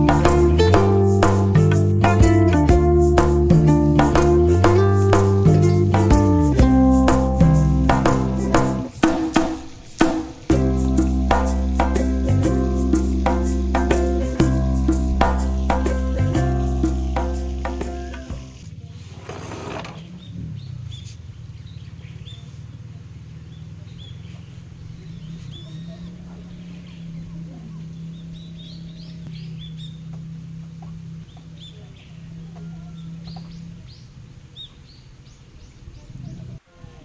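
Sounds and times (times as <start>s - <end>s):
steady low hum: 0.0s - 19.3s
small birds chirping: 0.0s - 36.7s.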